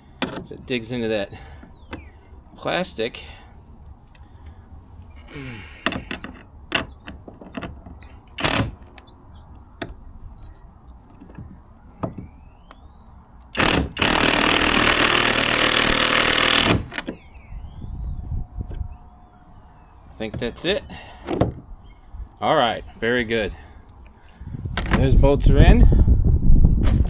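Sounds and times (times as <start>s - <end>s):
tool handling clicks and knocks: 0.0s - 0.7s, 5.8s - 12.8s
power driver driving a bolt: 5.3s - 9.1s, 13.4s - 17.4s.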